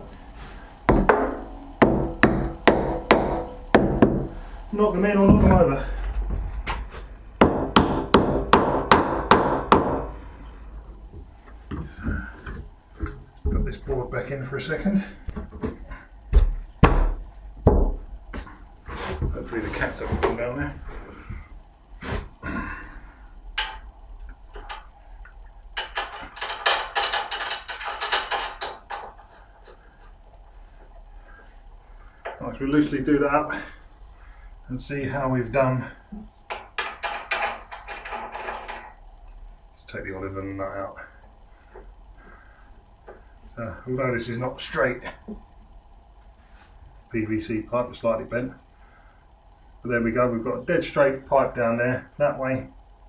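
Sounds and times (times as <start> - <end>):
hammer knocking nails: 0.9 - 4.4, 7.4 - 10.1, 16.3 - 18.0.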